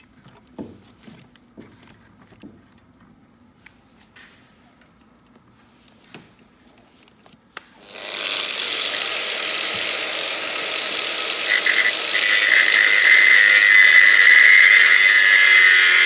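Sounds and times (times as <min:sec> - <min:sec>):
small grinder cutting metal: 0:07.8 - 0:16.0.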